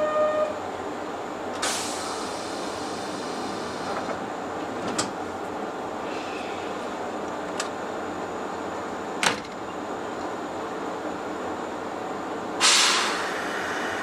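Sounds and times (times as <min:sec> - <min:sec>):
electric train humming: 0:00.0 - 0:14.0
compressed air hiss: 0:01.6 - 0:03.9, 0:12.6 - 0:14.0.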